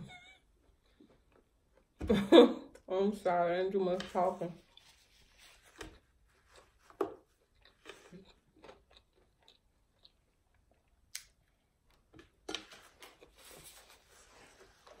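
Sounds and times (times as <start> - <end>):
person chewing: 7.3 - 12.0.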